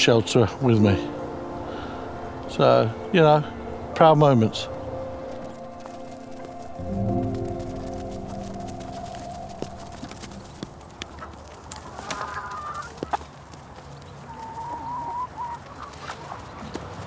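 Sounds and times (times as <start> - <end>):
chicken clucking: 7.6 - 17.0.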